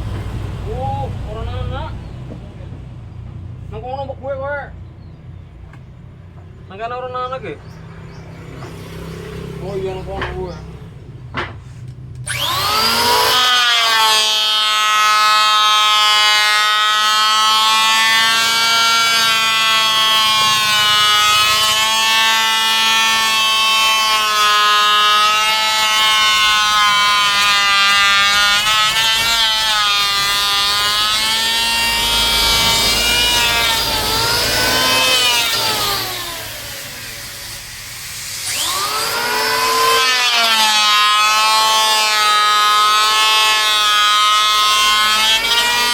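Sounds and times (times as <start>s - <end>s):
power saw motor whine: 12.2s - 45.9s.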